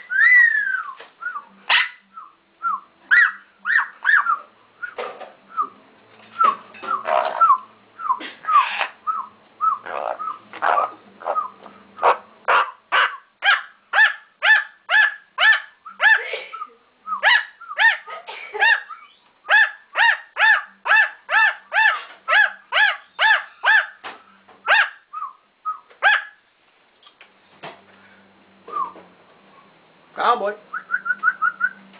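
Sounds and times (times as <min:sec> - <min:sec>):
parrot barking like a dog: 0:01.7 - 0:02.0, 0:03.1 - 0:04.4, 0:09.8 - 0:11.4, 0:12.0 - 0:16.3, 0:17.2 - 0:24.1, 0:24.7 - 0:25.1, 0:26.0 - 0:26.4.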